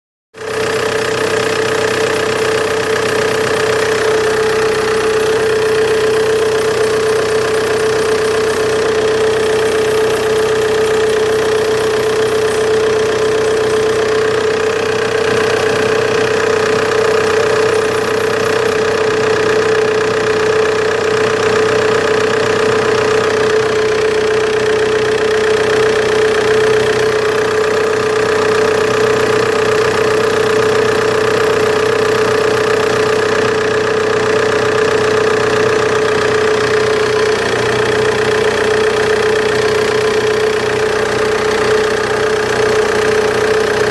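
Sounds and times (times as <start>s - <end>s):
car engine idling: 0.4s - 43.9s
steady whining belt: 0.4s - 43.9s.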